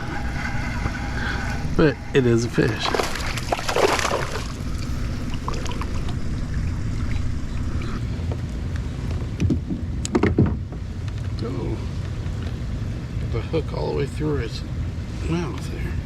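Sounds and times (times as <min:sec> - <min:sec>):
water splashing: 0:00.0 - 0:08.0
wind on microphone: 0:00.0 - 0:08.0.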